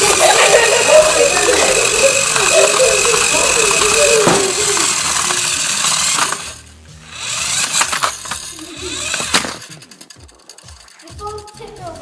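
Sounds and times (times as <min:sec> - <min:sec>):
toy car motor and gears: 0:00.0 - 0:12.0
small clicks and rattles: 0:07.5 - 0:12.0.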